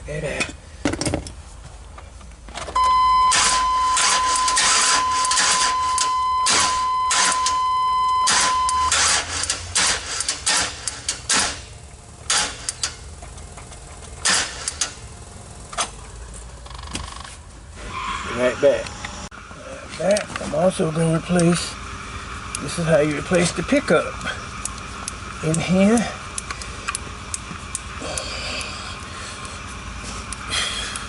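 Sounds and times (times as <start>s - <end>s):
steady high beep tone: 2.8s - 8.9s.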